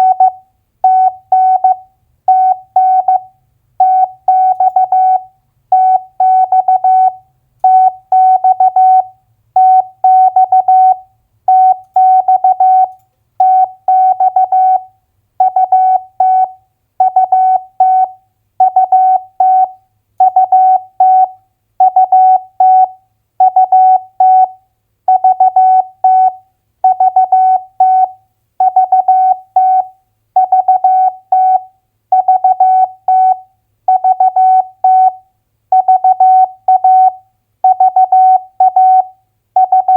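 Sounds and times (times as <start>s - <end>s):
morse code tone: 35.8s - 39.9s.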